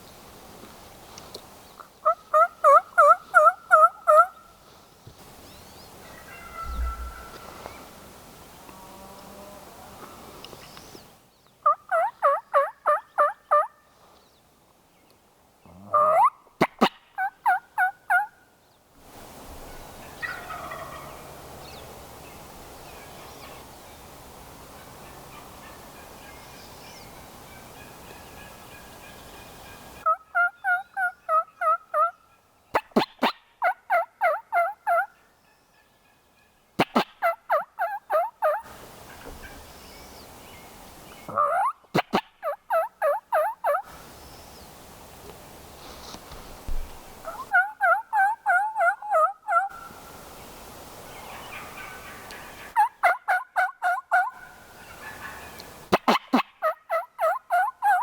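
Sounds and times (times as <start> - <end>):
wild turkeys gobbling: 2.0 - 4.5, 6.0 - 8.1, 11.6 - 13.8, 15.9 - 18.4, 19.7 - 21.4, 24.8 - 39.8, 41.2 - 44.0, 47.2 - 50.2, 51.1 - 58.0.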